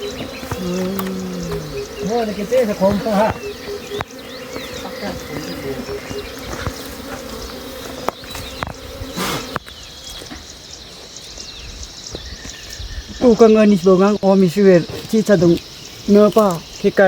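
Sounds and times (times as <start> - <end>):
bees buzzing: 0.0 - 11.4.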